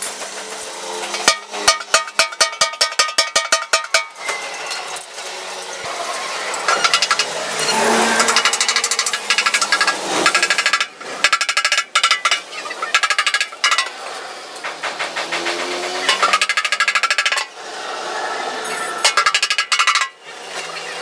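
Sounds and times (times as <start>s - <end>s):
rapid tapping on metal tank: 1.3s - 4.1s.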